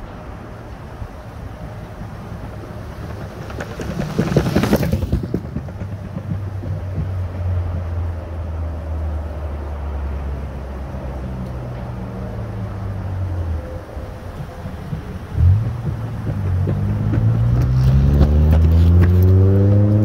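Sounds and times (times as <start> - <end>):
electric skateboard hum: 1.0 - 8.3, 13.2 - 20.0.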